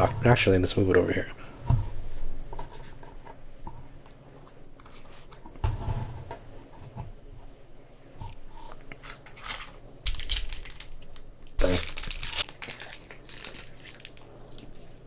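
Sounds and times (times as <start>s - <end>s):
wrapper crinkling and tearing: 9.3s - 15.0s.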